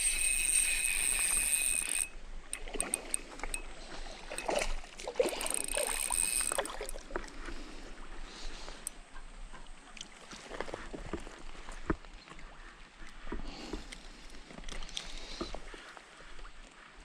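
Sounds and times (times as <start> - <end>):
water splashing and sloshing: 2.4 - 8.8, 9.4 - 16.8.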